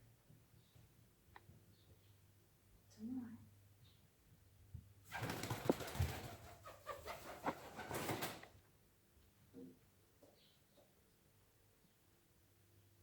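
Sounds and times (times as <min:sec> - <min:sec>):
pigeon wings flapping: 0:05.1 - 0:08.4.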